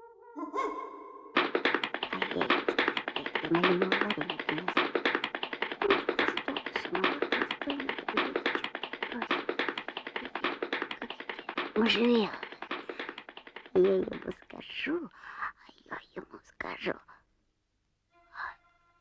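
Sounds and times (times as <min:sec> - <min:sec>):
rapid even tapping: 0:01.4 - 0:14.7.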